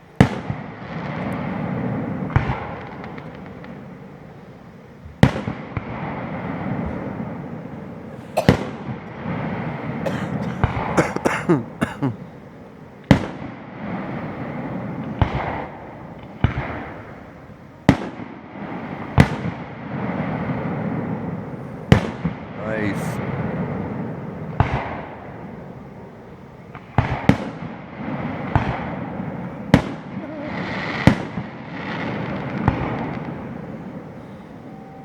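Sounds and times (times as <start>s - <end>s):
fireworks booming: 5.2s - 12.2s, 17.9s - 25.2s, 27.0s - 34.0s.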